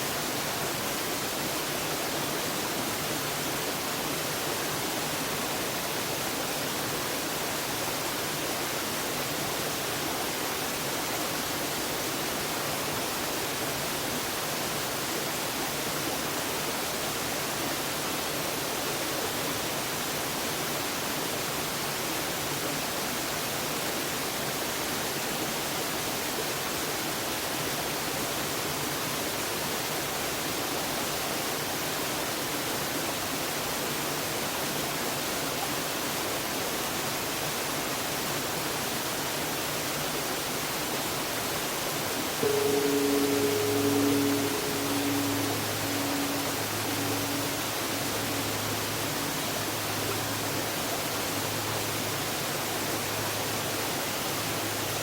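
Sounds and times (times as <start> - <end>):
waterfall rushing: 38.3 - 55.0.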